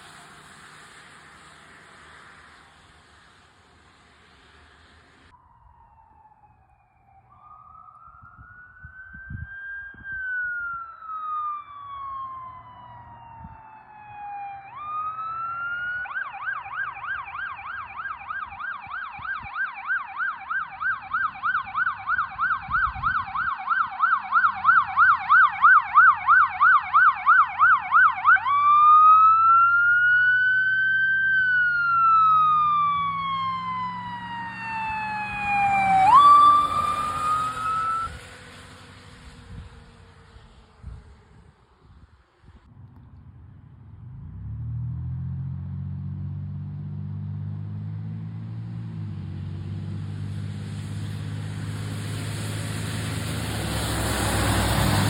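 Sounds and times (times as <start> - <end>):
electronic siren wailing and yelping: 5.4 - 38.2
low engine note: 28.2 - 55.0.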